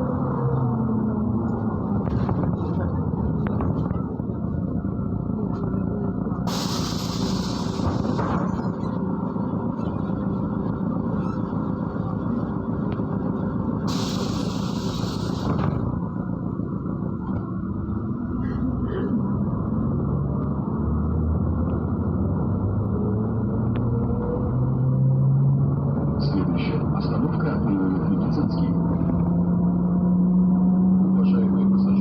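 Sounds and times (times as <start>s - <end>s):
bus engine rumbling: 0.0s - 32.0s
compressed-air hiss: 6.5s - 8.4s, 13.9s - 15.6s.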